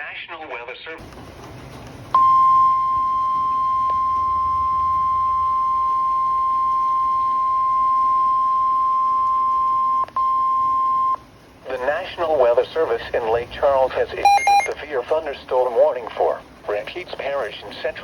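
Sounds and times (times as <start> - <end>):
steady alarm tone: 14.2 - 14.7.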